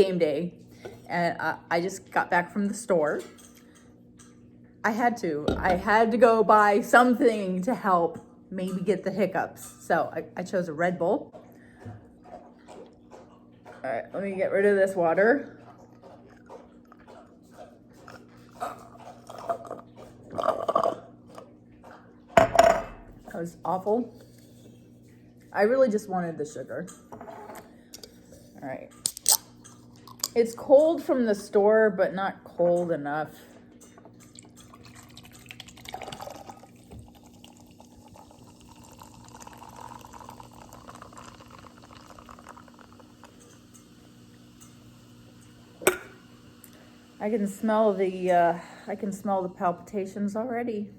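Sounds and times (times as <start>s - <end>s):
person gulping water: 18.6s - 21.2s, 34.9s - 43.3s
fizzy drink pouring into glass: 34.7s - 43.6s
fine fizzing crackle: 34.7s - 48.1s.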